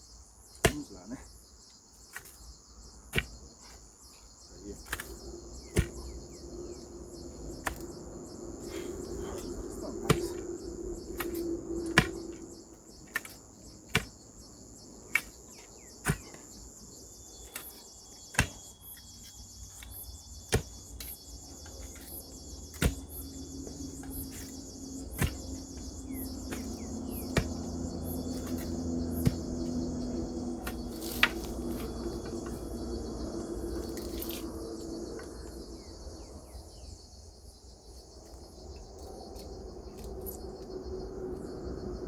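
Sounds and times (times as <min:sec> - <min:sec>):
insects buzzing: 0:00.0 - 0:42.0
digging tool chopping into soil: 0:00.5 - 0:01.1, 0:02.1 - 0:02.5, 0:03.1 - 0:03.8, 0:04.8 - 0:06.3, 0:07.6 - 0:08.0, 0:09.2 - 0:14.4, 0:15.0 - 0:16.6, 0:17.3 - 0:32.5.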